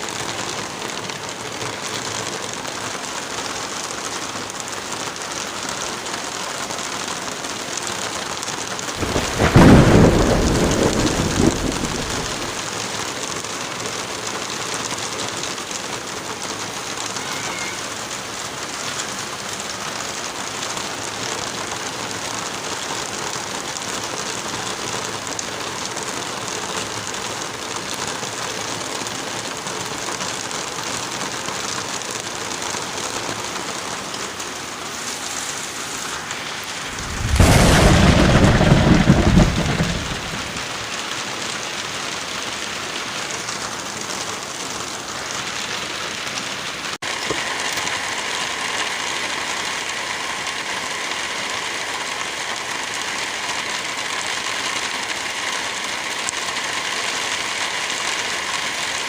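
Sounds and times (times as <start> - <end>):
light rain: 0.0 - 59.0
wind through trees: 8.8 - 13.8, 32.4 - 50.1
loud deep rumble: 9.0 - 12.6, 36.8 - 40.8.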